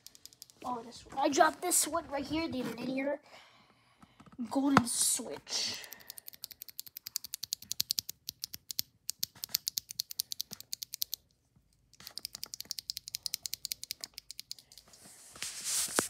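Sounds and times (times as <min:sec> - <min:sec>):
mechanical keyboard typing: 0:00.0 - 0:00.6, 0:05.8 - 0:11.3, 0:12.0 - 0:14.9.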